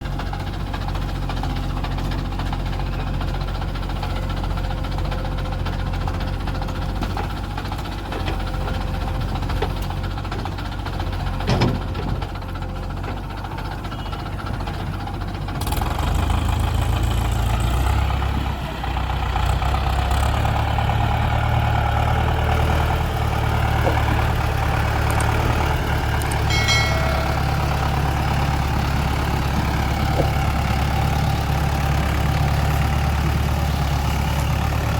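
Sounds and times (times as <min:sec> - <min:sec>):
diesel engines running: 0:00.0 - 0:34.9.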